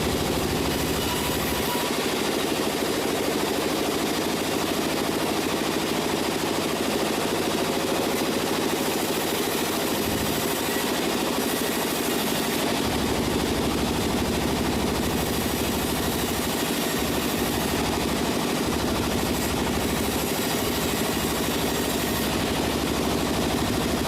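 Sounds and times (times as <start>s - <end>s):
sawmill machinery rattling: 0.0s - 24.0s.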